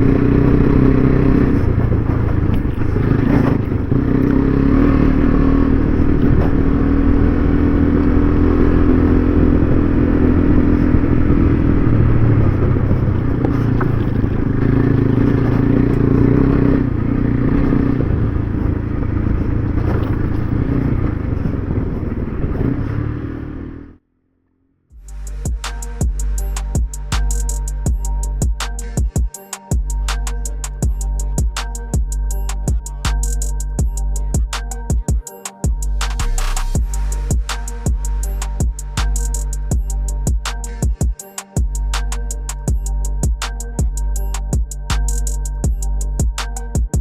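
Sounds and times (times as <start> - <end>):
motorcycle engine running: 0.0 - 47.0
knocks and clatter: 1.6 - 4.5.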